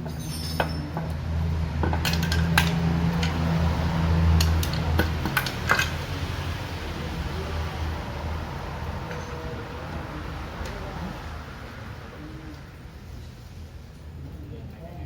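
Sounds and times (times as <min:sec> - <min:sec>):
metal tools clinking: 0:00.0 - 0:01.2, 0:01.9 - 0:03.4, 0:04.4 - 0:06.0.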